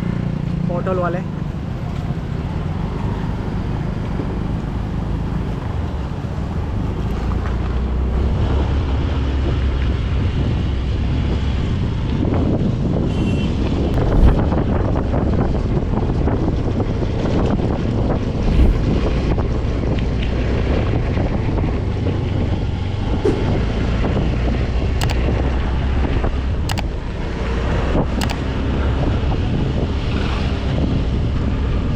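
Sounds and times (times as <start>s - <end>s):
wind buffeting microphone: 11.6s - 25.3s.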